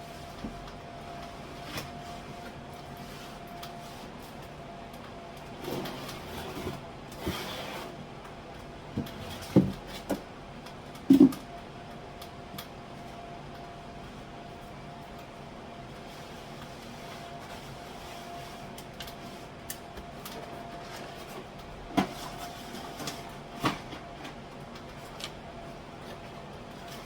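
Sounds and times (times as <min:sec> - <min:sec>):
items knocking on cupboard: 0:09.5 - 0:09.8, 0:11.1 - 0:11.4
groceries rustling and shuffling: 0:15.8 - 0:27.0.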